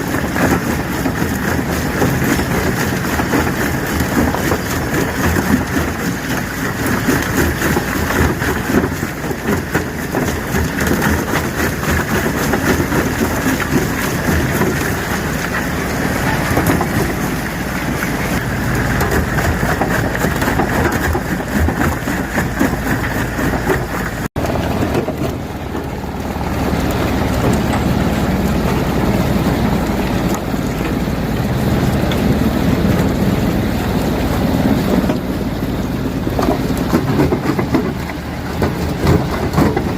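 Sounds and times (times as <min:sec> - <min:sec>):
rapid knocking of stone: 0:00.0 - 0:25.4
stone crusher crushing rock: 0:00.0 - 0:31.0, 0:33.6 - 0:39.9.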